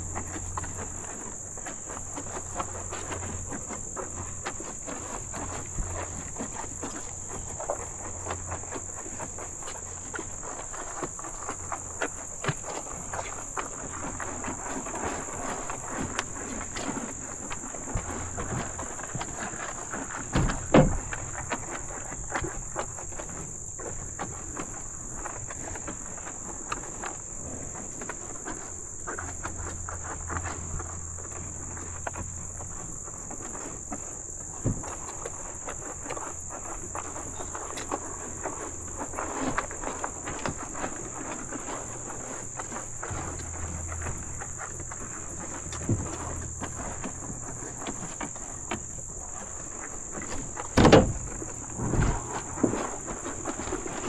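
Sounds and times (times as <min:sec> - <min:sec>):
cattle rustling and knocking: 0:00.0 - 0:54.0
high insect chorus: 0:00.0 - 0:54.0
loud thump: 0:50.8 - 0:52.2.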